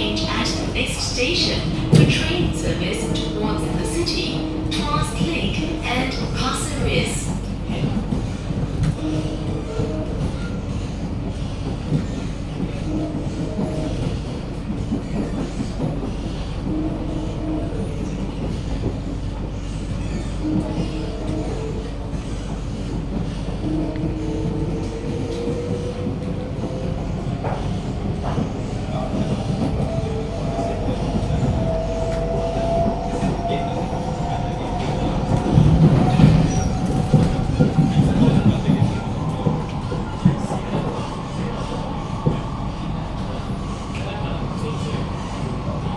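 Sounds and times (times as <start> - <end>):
train wheels rumbling on rail: 0.0 - 45.9.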